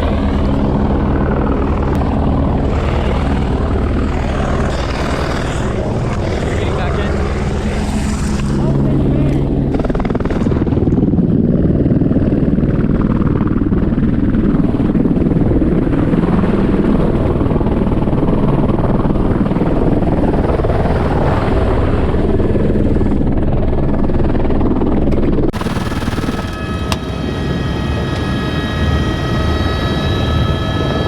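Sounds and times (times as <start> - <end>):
helicopter rotor and engine: 0.0 - 31.0.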